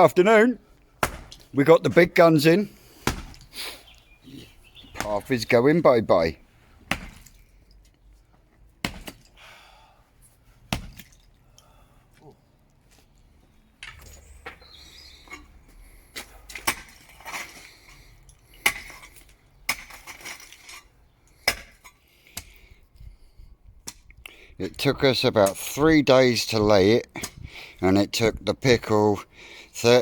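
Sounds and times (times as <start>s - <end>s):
hard impacts on paving: 1.0s - 2.2s, 2.9s - 3.6s, 4.7s - 7.5s, 8.8s - 9.3s, 10.7s - 11.2s, 15.7s - 20.7s.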